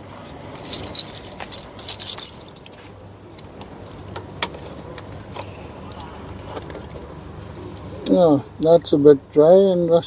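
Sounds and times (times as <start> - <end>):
metallic jingling and clinking: 0.6 - 2.8.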